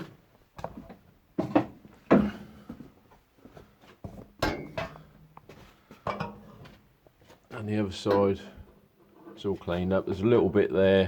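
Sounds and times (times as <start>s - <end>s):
knocks and clunks: 0.0s - 2.9s, 4.1s - 6.8s.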